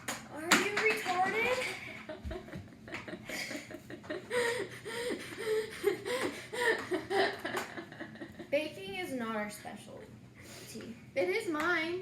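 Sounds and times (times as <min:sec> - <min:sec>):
girl laughing: 0:01.8 - 0:08.7.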